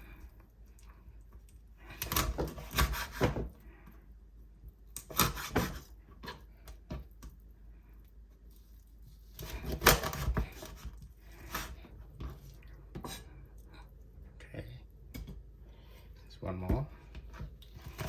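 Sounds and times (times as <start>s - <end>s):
knife chopping on cutting board: 2.0s - 3.5s, 5.0s - 6.4s.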